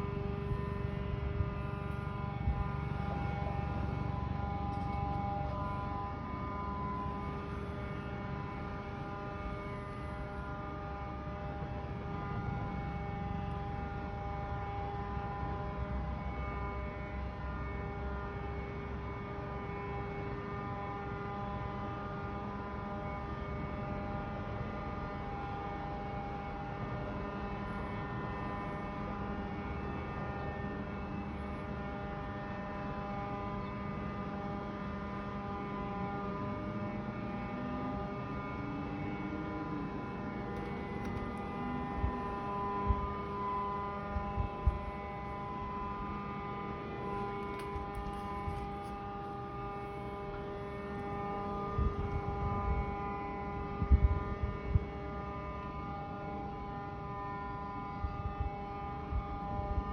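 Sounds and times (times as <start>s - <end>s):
droning hum with pitched tones: 0.0s - 59.9s.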